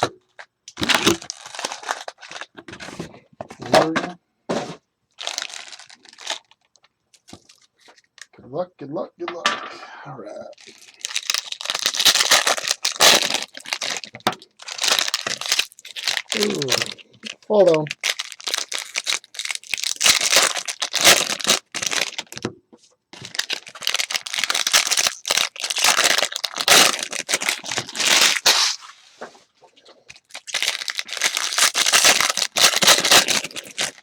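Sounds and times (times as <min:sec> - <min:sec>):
wrappers tearing and crinkling: 0:00.8 - 0:02.6, 0:05.2 - 0:08.0, 0:10.6 - 0:22.4, 0:23.2 - 0:29.0, 0:30.1 - 0:34.0.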